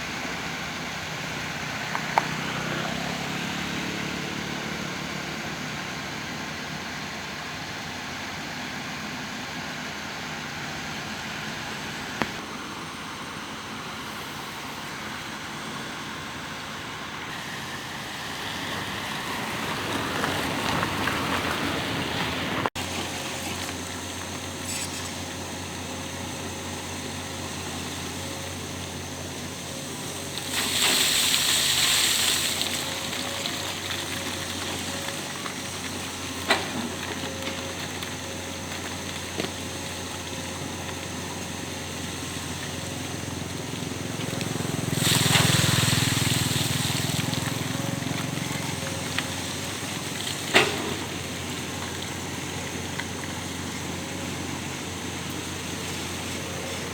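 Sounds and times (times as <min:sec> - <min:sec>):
construction machinery engine hum: 0:00.0 - 0:56.9
loud hiss: 0:24.4 - 0:35.3, 0:39.6 - 0:47.9.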